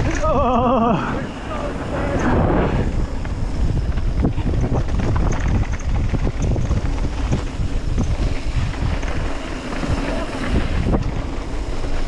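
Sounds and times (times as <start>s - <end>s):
bike tyre noise: 0.0s - 12.0s
wind buffeting microphone: 0.0s - 12.0s
bike knocks and rattles: 3.2s - 12.0s.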